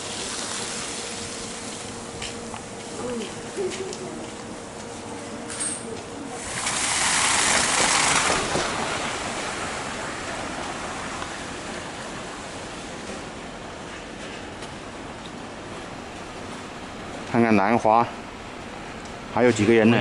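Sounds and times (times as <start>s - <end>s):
tyres hissing on wet snow: 0.0s - 3.0s, 6.5s - 10.7s, 15.9s - 20.0s.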